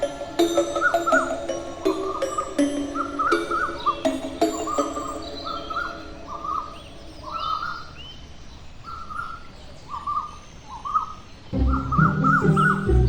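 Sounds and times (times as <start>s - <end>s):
bird chirping: 0.0s - 13.0s
loud music: 11.6s - 13.0s.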